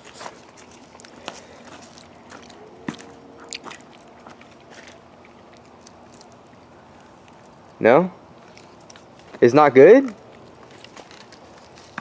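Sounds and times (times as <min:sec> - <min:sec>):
person chewing meat: 0:00.0 - 0:07.7.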